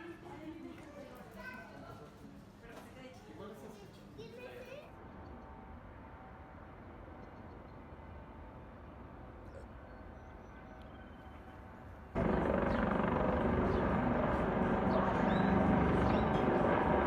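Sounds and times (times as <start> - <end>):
background hum: 5.0 - 17.0
vehicle engine noise: 12.2 - 17.0.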